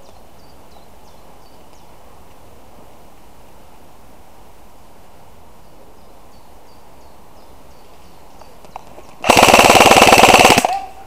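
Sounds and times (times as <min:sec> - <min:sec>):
faint outdoor background: 0:00.0 - 0:11.0
airsoft gun full-auto fire: 0:09.2 - 0:11.0.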